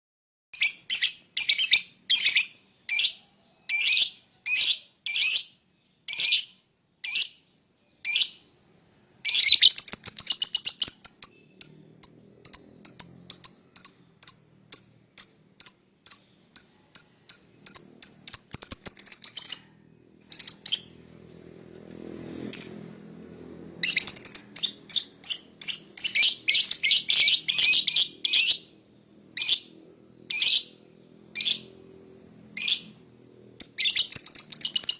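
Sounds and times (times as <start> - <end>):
lovebird chirping: 0.6 - 8.6, 9.2 - 21.0, 22.6 - 23.0, 23.8 - 31.8, 32.6 - 33.0, 33.6 - 34.9.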